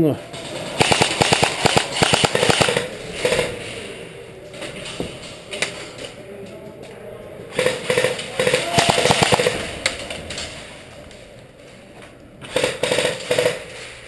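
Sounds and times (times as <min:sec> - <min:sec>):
airsoft guns firing in bursts: 0:00.3 - 0:03.8, 0:07.5 - 0:10.4, 0:12.4 - 0:14.0.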